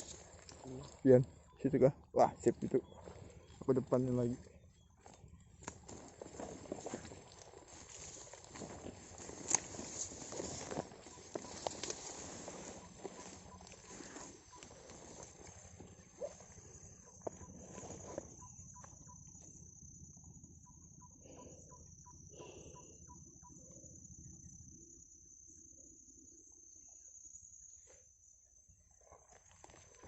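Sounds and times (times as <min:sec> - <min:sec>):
high-pitched insect chorus: 0:00.0 - 0:30.0
rustles through grass: 0:05.1 - 0:16.5.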